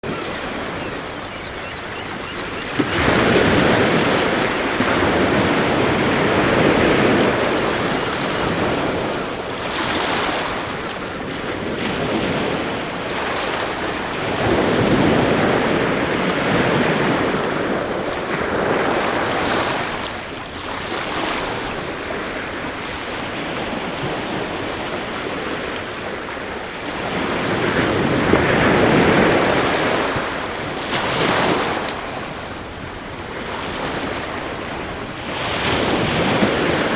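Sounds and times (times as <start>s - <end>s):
sea waves washing in: 0.0s - 36.9s
wind: 0.0s - 36.9s.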